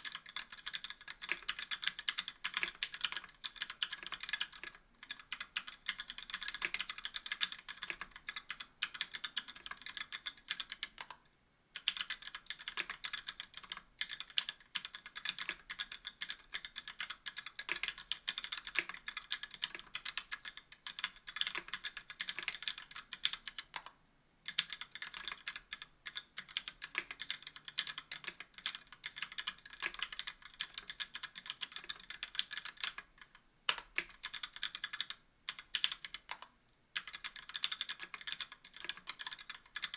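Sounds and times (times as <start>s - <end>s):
mechanical keyboard typing: 0.0s - 11.2s, 11.8s - 23.9s, 24.5s - 39.9s.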